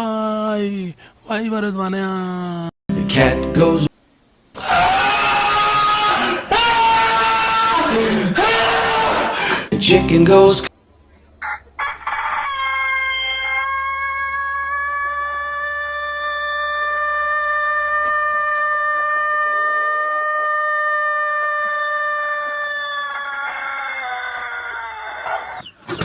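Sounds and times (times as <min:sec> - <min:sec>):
rooster crowing: 0:04.6 - 0:09.4, 0:11.4 - 0:25.6.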